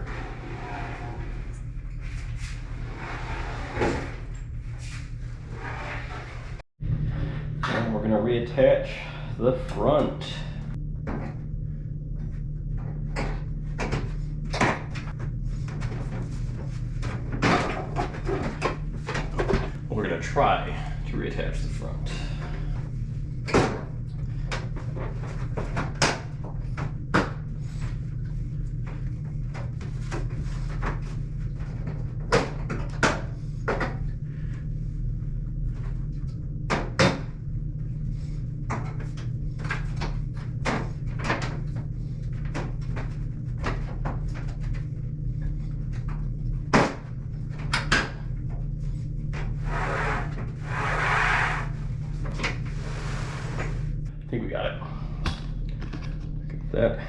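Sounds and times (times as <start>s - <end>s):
scraping noise: 0.0s - 8.2s, 49.5s - 54.1s
steady low hum: 0.0s - 57.0s.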